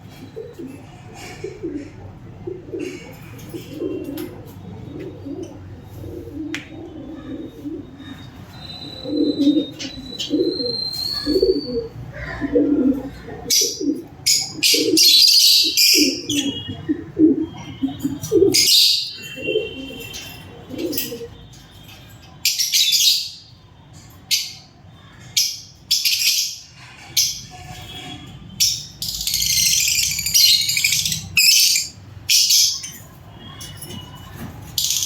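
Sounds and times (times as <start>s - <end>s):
lovebirds chirping shrilly: 7.0s - 12.0s, 13.5s - 21.2s, 28.6s - 34.1s.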